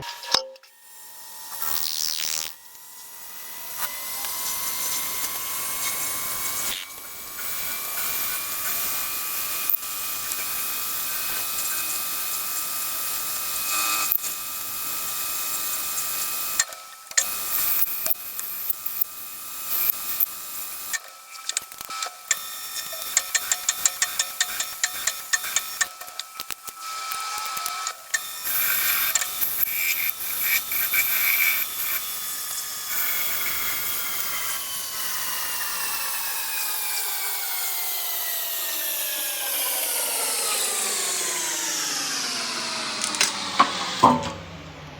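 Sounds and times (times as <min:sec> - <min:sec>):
machine tool cutting metal: 0:00.0 - 0:44.7
irregular clicks and ticks: 0:20.9 - 0:33.6.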